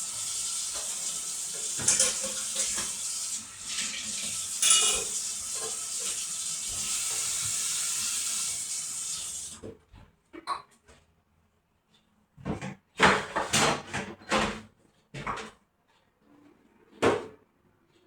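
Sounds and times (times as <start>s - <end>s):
water running from a faucet: 0.0s - 9.6s
dishes clattering: 0.8s - 3.1s, 3.7s - 6.2s.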